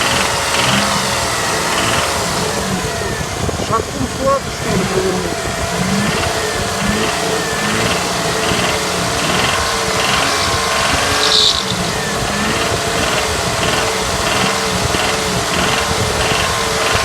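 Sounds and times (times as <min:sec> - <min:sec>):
engine running with knock: 0:00.0 - 0:17.0
short high-pitched sound: 0:11.0 - 0:12.0.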